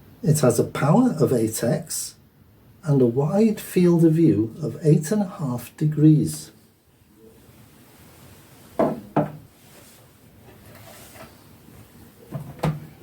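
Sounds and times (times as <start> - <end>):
soft knocks on wood: 8.8 - 9.4.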